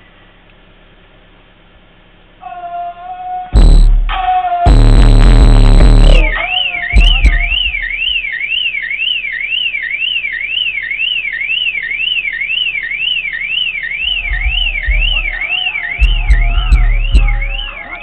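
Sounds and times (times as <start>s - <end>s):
car alarm siren wailing: 2.4s - 18.0s
bass thuds: 3.6s - 8.3s, 14.0s - 17.8s.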